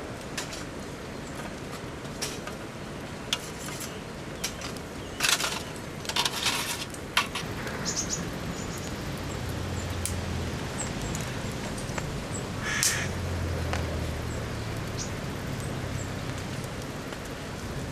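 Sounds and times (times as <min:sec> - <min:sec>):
steady rain: 0:00.0 - 0:17.9
sharp clicks and crackles: 0:03.3 - 0:08.1, 0:10.0 - 0:17.8.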